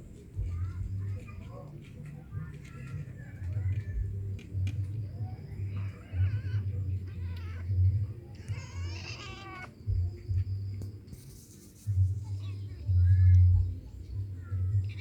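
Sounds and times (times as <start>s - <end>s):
cat meowing: 5.8s - 9.7s.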